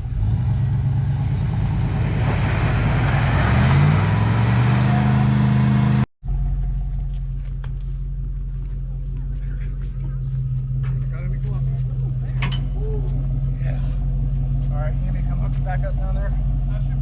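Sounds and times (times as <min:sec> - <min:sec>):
truck engines revving hard: 0:00.0 - 0:06.1.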